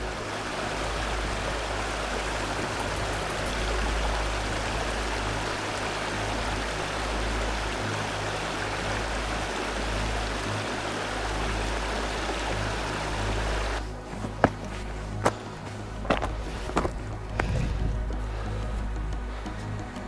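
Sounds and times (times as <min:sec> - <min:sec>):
wind blowing across microphone: 0:11.9 - 0:20.0.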